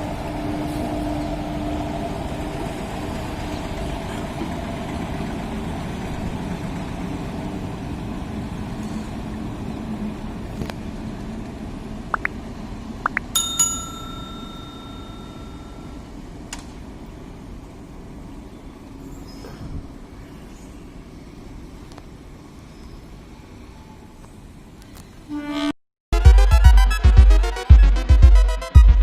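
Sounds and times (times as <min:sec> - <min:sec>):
electric locomotives rumbling: 0:00.0 - 0:19.1
bell ring: 0:13.4 - 0:16.0.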